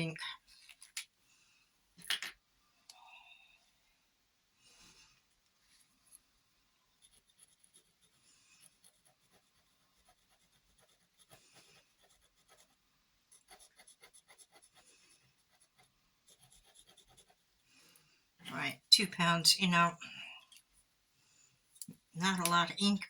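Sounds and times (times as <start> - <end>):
pen scratching on paper: 7.0 - 17.6.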